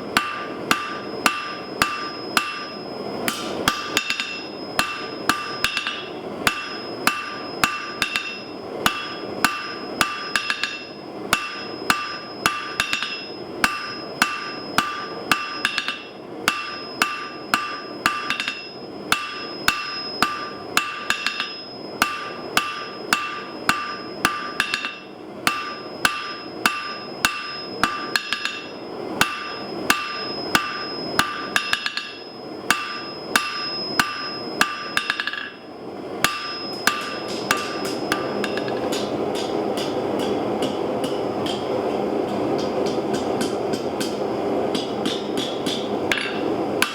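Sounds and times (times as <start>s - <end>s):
anvil ringing high tone: 0.1s - 39.5s
hammer blows on anvil: 0.2s - 35.6s, 36.2s - 46.9s.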